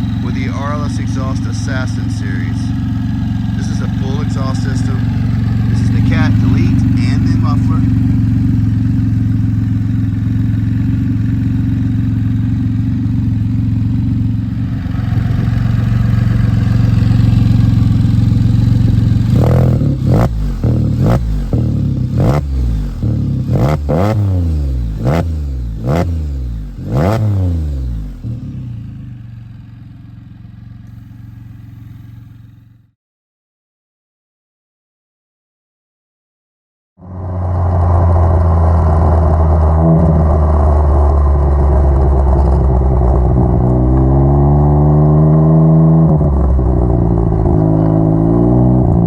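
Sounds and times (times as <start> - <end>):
engine revving: 0.0 - 29.4, 37.0 - 49.0
motorcycle engine idling: 0.0 - 32.9, 40.5 - 44.1.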